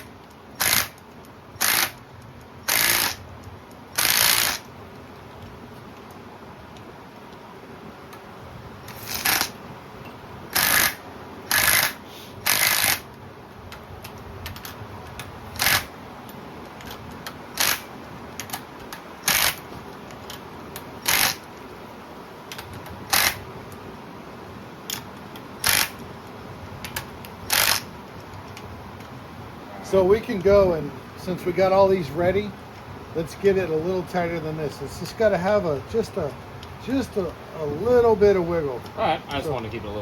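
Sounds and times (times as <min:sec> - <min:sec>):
socket ratchet clicking: 0:00.0 - 0:04.7, 0:10.5 - 0:15.9, 0:16.7 - 0:21.6, 0:22.5 - 0:23.4, 0:24.9 - 0:26.0, 0:26.8 - 0:28.7.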